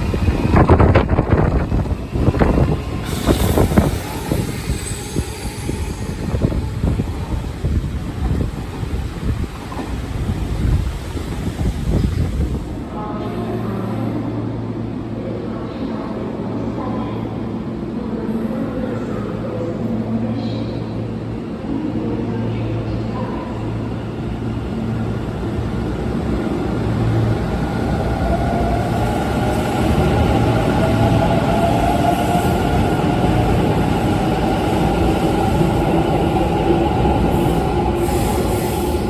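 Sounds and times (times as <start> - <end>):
wheels rumbling on rail: 0.0 - 13.0.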